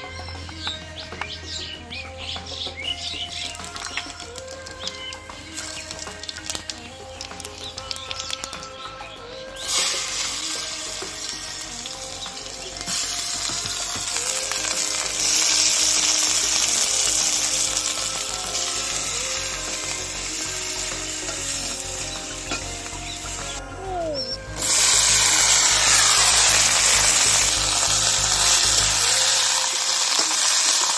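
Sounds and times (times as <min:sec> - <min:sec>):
food sizzling in hot oil: 0:09.6 - 0:23.6, 0:24.5 - 0:30.9.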